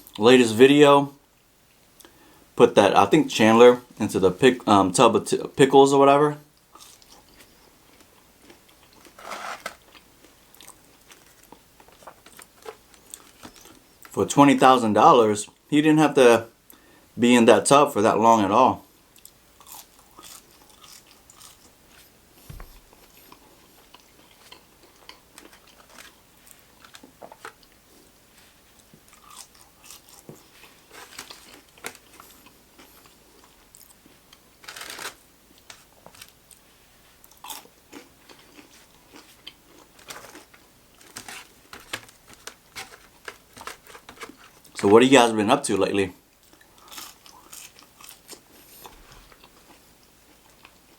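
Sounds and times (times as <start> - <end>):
person crunching crispy food: 6.8 - 7.2, 19.2 - 21.7, 29.1 - 34.0, 34.6 - 35.2, 37.3 - 44.7, 46.4 - 49.4.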